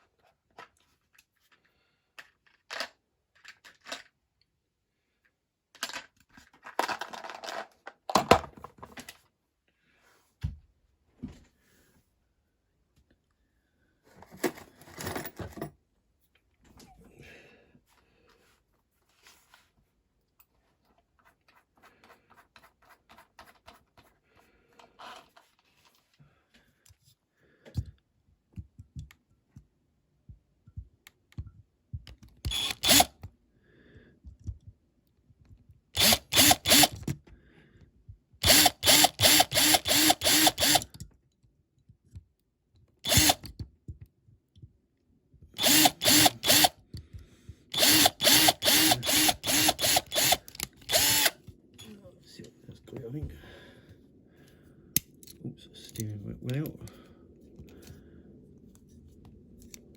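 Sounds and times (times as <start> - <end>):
power drill bursts: 32.5 - 33.1, 36.0 - 37.0, 38.4 - 40.9, 43.0 - 43.5, 45.6 - 46.8, 47.7 - 51.4.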